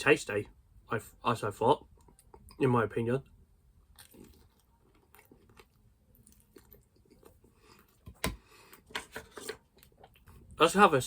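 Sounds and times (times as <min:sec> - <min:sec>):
person chewing food: 0:03.8 - 0:10.5.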